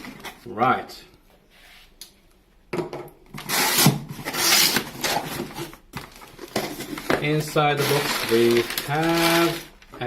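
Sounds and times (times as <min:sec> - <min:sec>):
cardboard packaging rubbing and scraping: 0:03.4 - 0:09.8.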